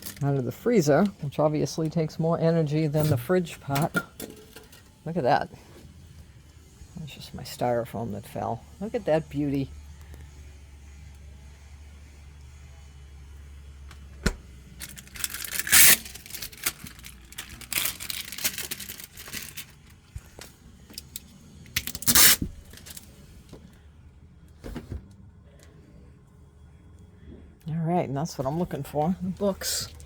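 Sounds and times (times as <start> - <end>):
packing material rustling and tearing: 0.0 - 0.2, 14.8 - 20.5, 21.8 - 23.1.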